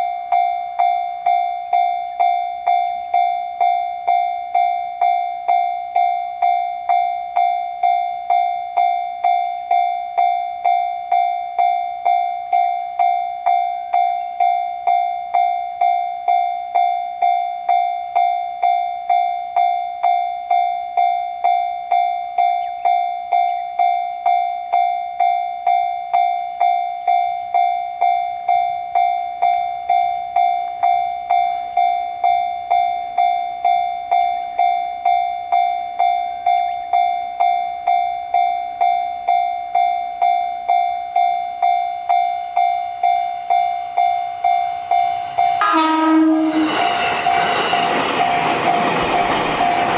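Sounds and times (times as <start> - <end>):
railroad crossing bell ringing: 0.0 - 49.9.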